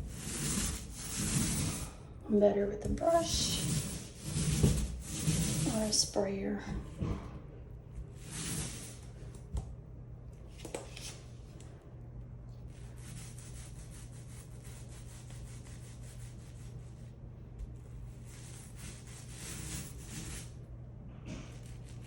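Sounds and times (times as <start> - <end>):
paint roller swishing on wall: 0.0 - 6.2, 8.0 - 9.4, 12.7 - 20.6.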